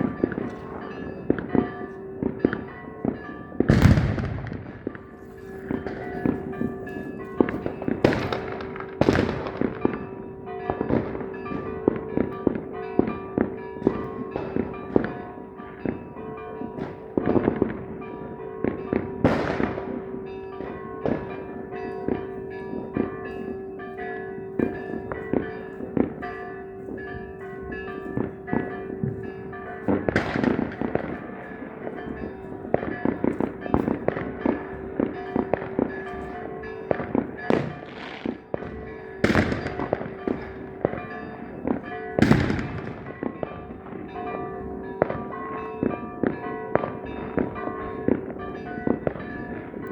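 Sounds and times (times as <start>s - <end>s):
fireworks banging: 0.0s - 10.1s, 18.6s - 20.0s, 29.8s - 44.1s.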